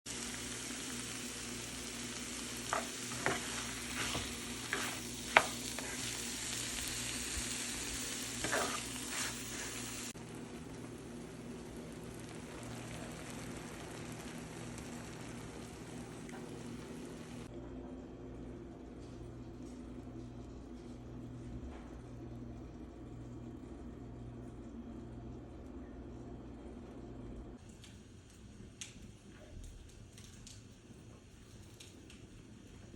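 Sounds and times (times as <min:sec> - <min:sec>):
egg mixture sizzling in a pan: 0:00.1 - 0:17.5
utensil scraping a pan: 0:02.7 - 0:06.6, 0:08.2 - 0:10.1.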